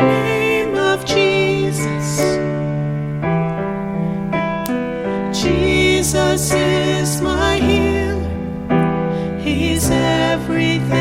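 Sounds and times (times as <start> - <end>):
person singing worship song: 0.0 - 3.0, 4.6 - 11.0
keyboard sustained chords: 0.0 - 11.0.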